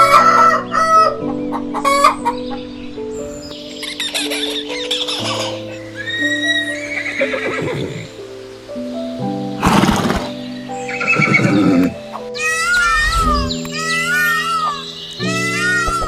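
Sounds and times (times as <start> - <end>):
background music: 0.0 - 16.0
horse whinnying: 6.0 - 8.1, 11.0 - 13.6.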